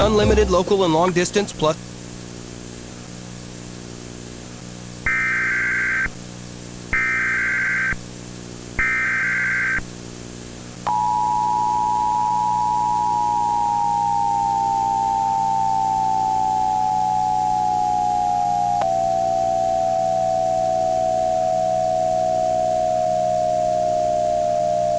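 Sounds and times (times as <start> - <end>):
two-tone attention signal: 0.0 - 1.2
warbling data tone bursts: 0.0 - 1.8
steady hum and hiss: 0.0 - 10.7.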